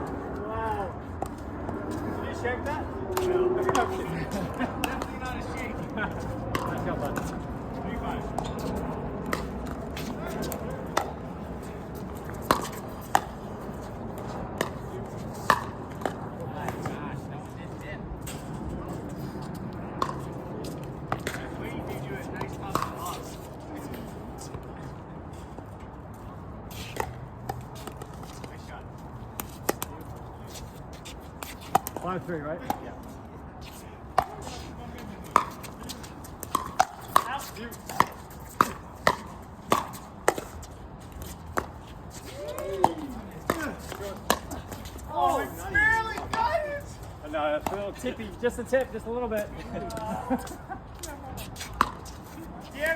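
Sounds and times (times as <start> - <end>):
ball bouncing on court: 3.2 - 5.5, 22.4 - 23.0, 35.3 - 40.6, 42.4 - 45.0.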